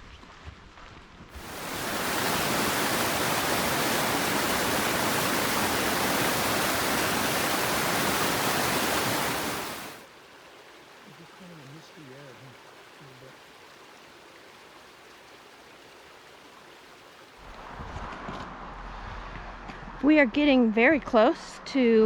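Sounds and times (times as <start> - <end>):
fast-flowing water rushing: 1.4 - 17.5.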